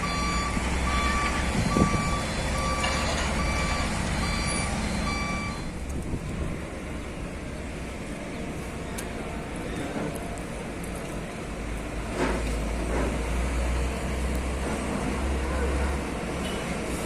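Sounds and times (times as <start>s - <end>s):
reversing alarm beeping: 0.0s - 5.7s
diesel engine running: 0.0s - 17.0s.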